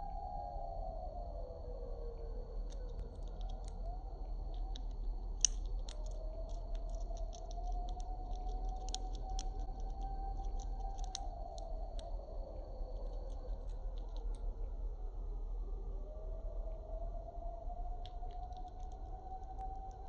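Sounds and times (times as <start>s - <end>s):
steady high whine: 0.0s - 20.0s
bird cracking seeds with beak: 4.5s - 12.0s.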